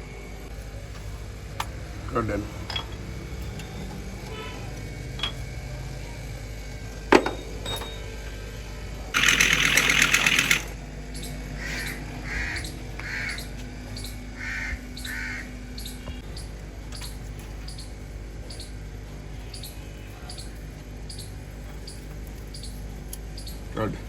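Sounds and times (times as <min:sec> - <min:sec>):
crow cawing: 0:11.6 - 0:13.6, 0:14.4 - 0:15.6.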